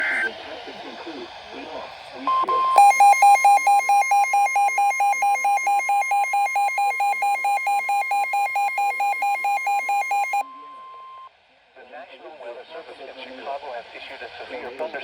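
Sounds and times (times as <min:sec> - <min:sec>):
steady alarm tone: 0:02.3 - 0:10.4
pulsing two-pitch alarm tone: 0:02.7 - 0:10.4.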